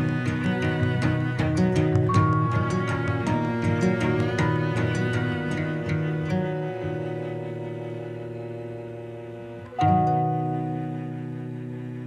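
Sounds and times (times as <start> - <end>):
sustained string notes: 0.0 - 12.0.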